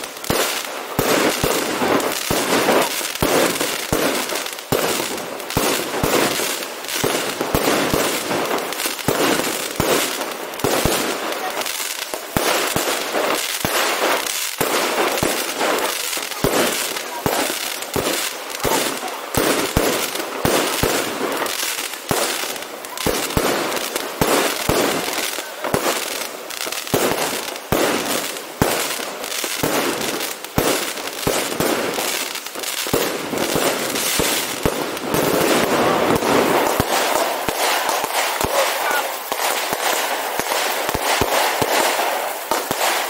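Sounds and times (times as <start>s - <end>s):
fireworks bangs and crackles: 0.0s - 43.0s.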